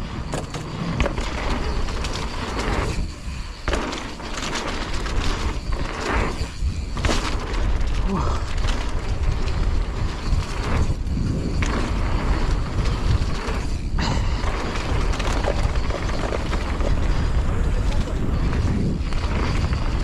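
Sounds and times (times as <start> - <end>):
bike frame rattling: 0.0 - 20.0
bike tyres on dirt trail: 0.0 - 20.0
wind buffeting microphone: 4.6 - 20.0.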